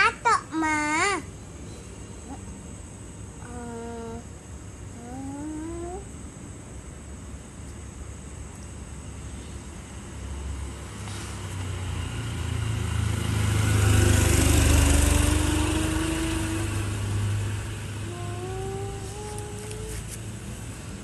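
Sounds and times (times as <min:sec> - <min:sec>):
vehicle engine passing by: 0:09.9 - 0:21.0
higher engine note: 0:11.8 - 0:20.6.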